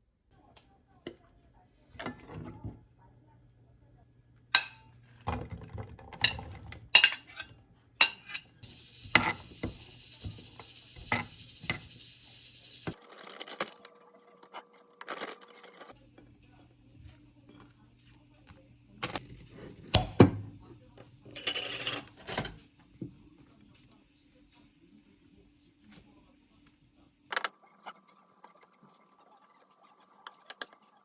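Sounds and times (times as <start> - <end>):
dishes and utensils clinking: 4.6 - 12.0
steady hiss: 8.6 - 13.0.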